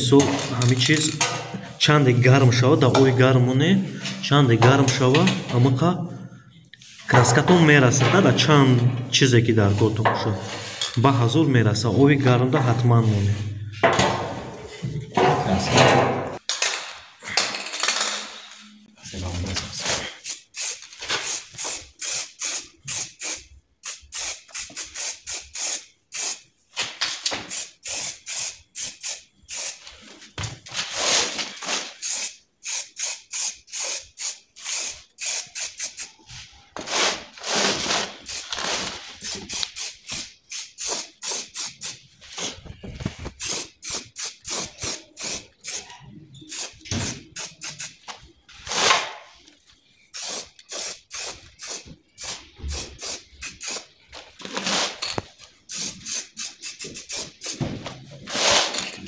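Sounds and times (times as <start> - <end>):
spray paint can hissing: 20.2 - 26.5, 27.5 - 29.9, 32.0 - 36.2, 38.2 - 38.6, 39.2 - 42.0, 43.4 - 45.8, 46.4 - 48.0, 50.1 - 53.9, 55.7 - 57.6.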